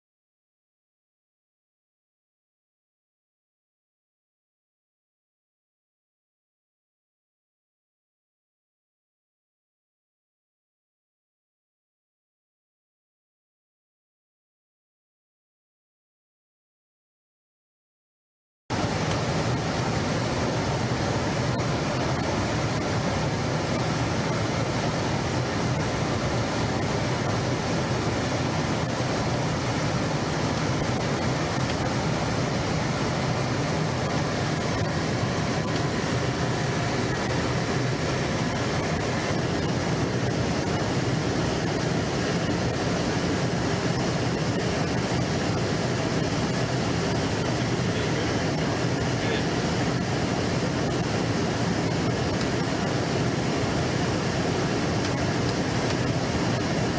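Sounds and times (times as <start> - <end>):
steady roar of noise: 18.7 - 56.9.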